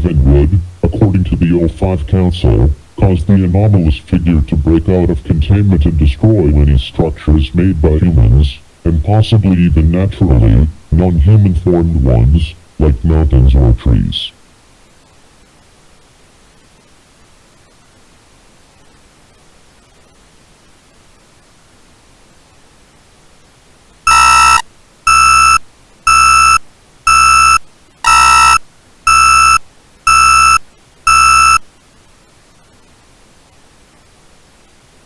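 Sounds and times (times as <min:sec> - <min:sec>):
faint steady hiss: 0:00.0 - 0:35.0
buzzy electronic alert beeps: 0:24.1 - 0:31.6.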